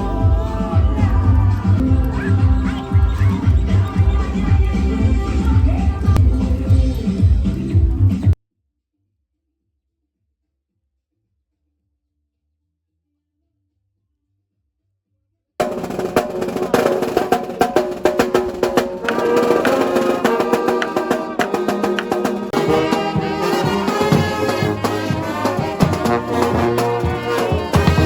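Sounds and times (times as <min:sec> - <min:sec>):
music with drums and brass: 0:00.0 - 0:08.4, 0:15.6 - 0:28.0.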